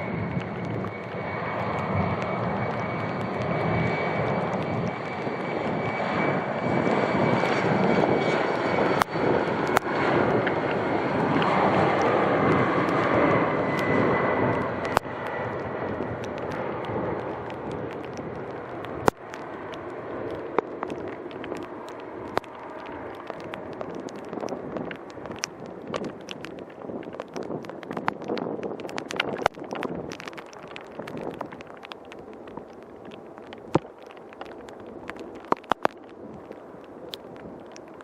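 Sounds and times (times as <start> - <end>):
jet airliner passing: 0.0 - 38.0
sharp clicks: 13.7 - 38.0.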